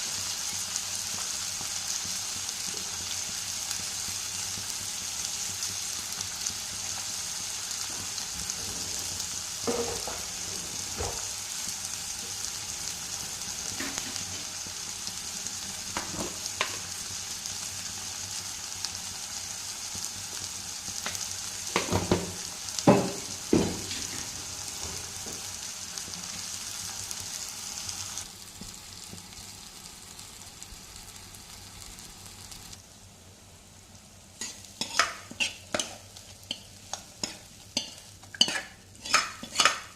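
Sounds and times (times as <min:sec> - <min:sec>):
food sizzling in hot oil: 0:00.0 - 0:39.9
spoon scraping against pan: 0:13.8 - 0:14.6, 0:34.4 - 0:39.9.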